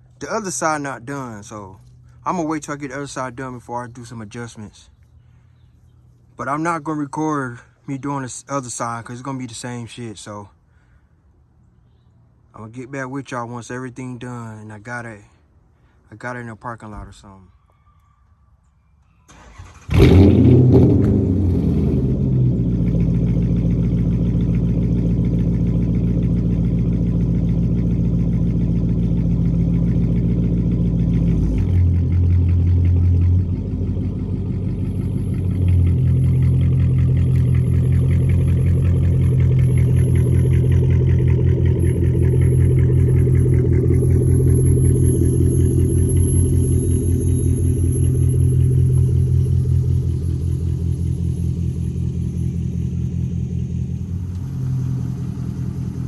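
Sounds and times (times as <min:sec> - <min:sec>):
car engine running: 0:19.6 - 0:56.0.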